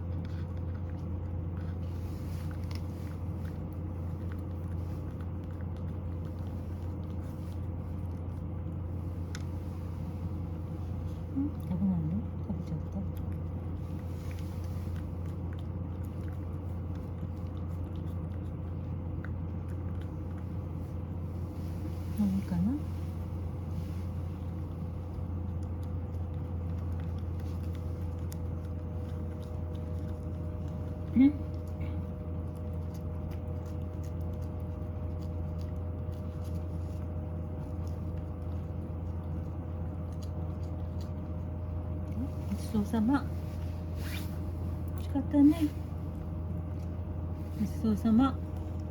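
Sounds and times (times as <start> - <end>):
low hum: 0.0 - 48.9
cat chewing clicks: 24.4 - 42.2.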